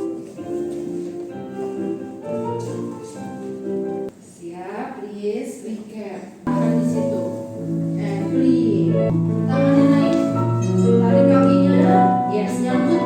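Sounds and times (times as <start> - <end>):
keyboard chords: 6.5 - 13.0.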